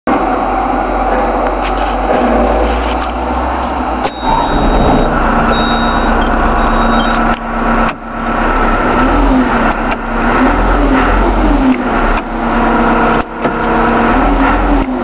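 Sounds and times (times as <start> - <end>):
diesel engine running: 0.1 - 15.0.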